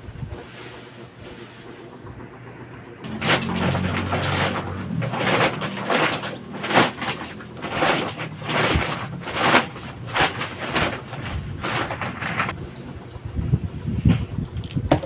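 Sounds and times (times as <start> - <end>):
plastic pieces rattling: 3.1 - 12.6.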